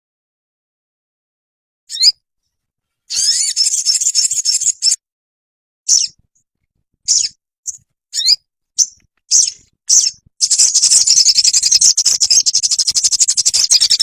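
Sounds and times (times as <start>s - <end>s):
songbird chirping and trilling: 1.9s - 2.2s, 3.1s - 5.0s, 5.9s - 6.4s, 7.0s - 14.0s.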